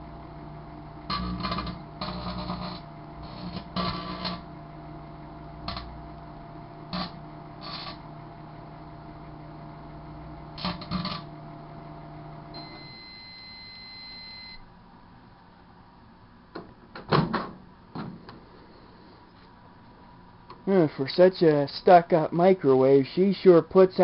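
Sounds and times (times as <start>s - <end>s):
microwave long beep: 0.0s - 14.7s
microwave oven humming: 0.0s - 24.0s.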